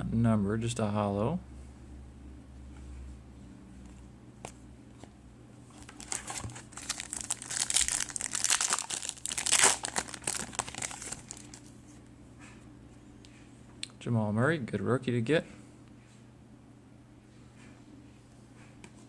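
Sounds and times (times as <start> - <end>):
wrapper crinkling: 5.7 - 11.7.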